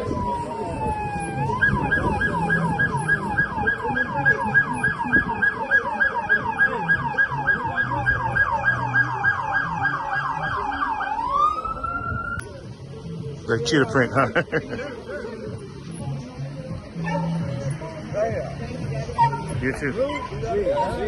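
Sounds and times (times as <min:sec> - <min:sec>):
emergency siren: 0:00.0 - 0:12.4.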